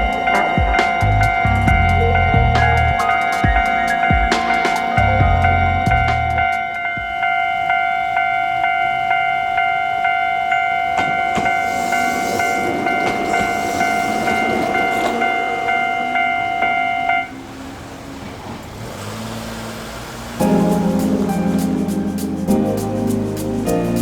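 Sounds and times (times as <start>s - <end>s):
level crossing warning bell: 0.0s - 18.1s
train wheels rumbling on rails: 10.9s - 21.6s.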